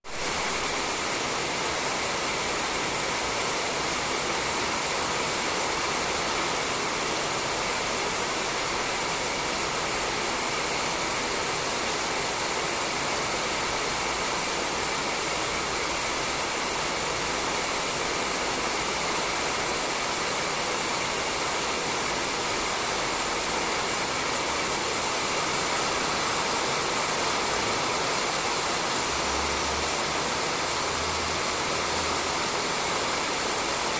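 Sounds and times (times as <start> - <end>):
rain on a roof: 0.0 - 33.9.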